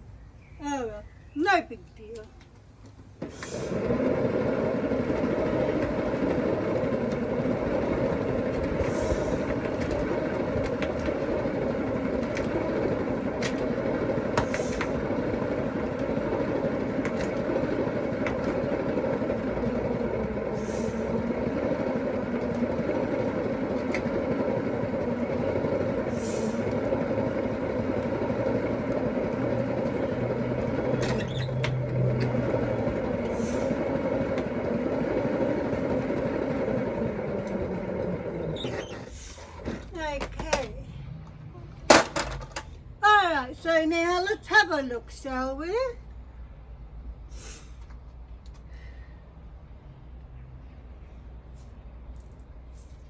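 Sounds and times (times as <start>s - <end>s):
spin dryer running: 3.2s - 40.7s.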